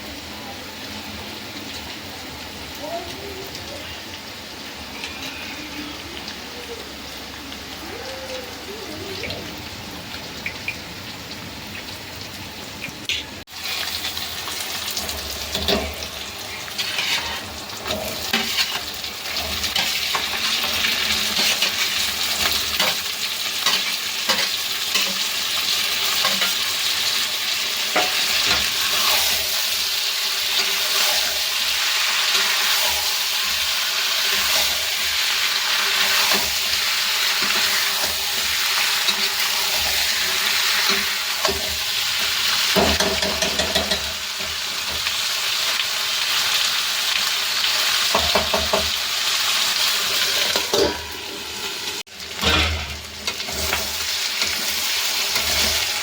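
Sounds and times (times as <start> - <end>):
food sizzling in hot oil: 0.0 - 56.0
spatula scraping a pan: 16.7 - 25.3, 27.9 - 29.8, 52.4 - 56.0.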